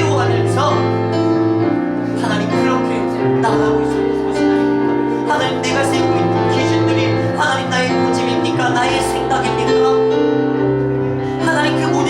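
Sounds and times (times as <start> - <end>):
instrumental background music: 0.0 - 12.0.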